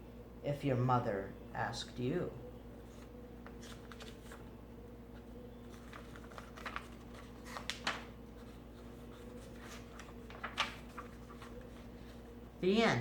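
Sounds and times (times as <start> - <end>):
steady electrical hum: 0.0 - 13.0
paper pages rustling: 2.8 - 4.5, 5.1 - 12.6.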